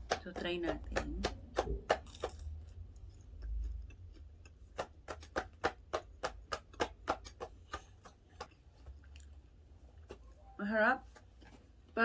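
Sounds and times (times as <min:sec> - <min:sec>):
crunching of fried food chewed: 0:01.5 - 0:10.2.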